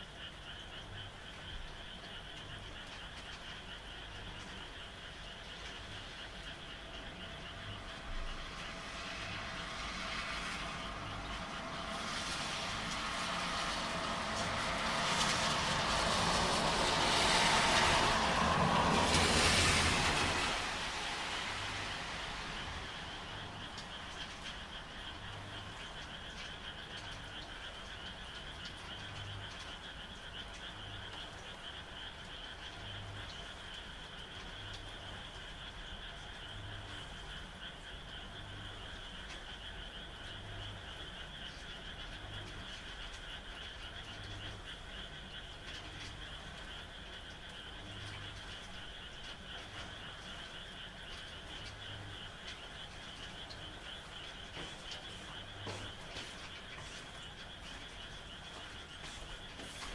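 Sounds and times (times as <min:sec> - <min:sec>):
deep frog croak: 0:00.0 - 0:59.9
frogs trilling: 0:00.0 - 0:59.9
rain rushing: 0:01.6 - 0:38.2.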